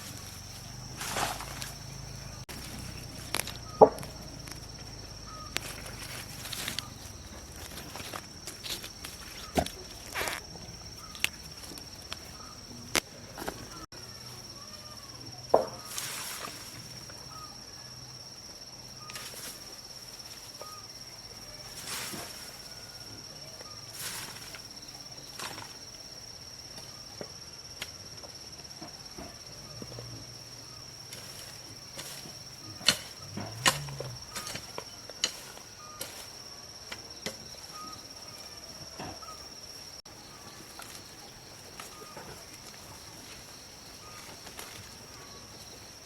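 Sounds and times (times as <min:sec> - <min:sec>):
knocks and scrapes: 0:00.0 - 0:13.9
insects droning: 0:00.0 - 0:46.0.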